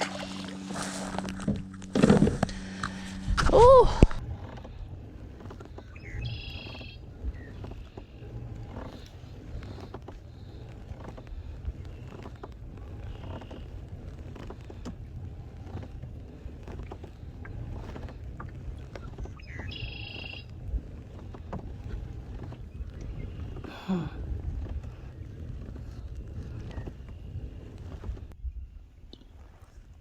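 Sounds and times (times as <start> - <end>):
water lapping against hull: 0.0 - 30.0
wind rumbling on microphone: 0.0 - 30.0.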